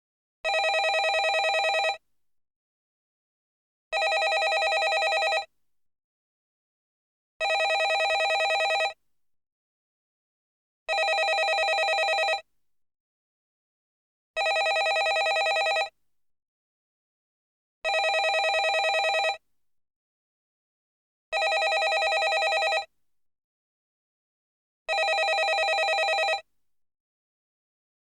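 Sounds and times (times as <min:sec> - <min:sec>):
landline telephone ringing: 0:00.5 - 0:02.0, 0:04.0 - 0:05.5, 0:07.4 - 0:09.0, 0:10.9 - 0:12.4, 0:14.4 - 0:15.9, 0:17.9 - 0:19.4, 0:21.4 - 0:22.9, 0:24.9 - 0:26.4.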